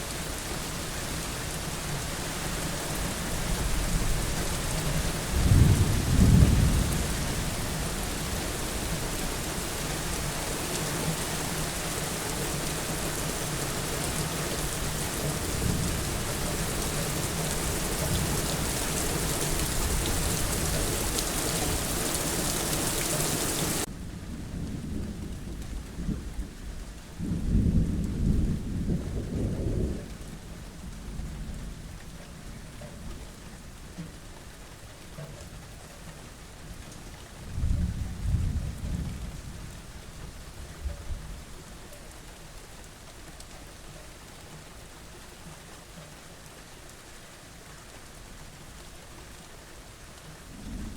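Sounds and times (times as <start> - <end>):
heavy rain: 0.0 - 50.9
thunder rumbling: 5.3 - 8.4, 50.4 - 50.9.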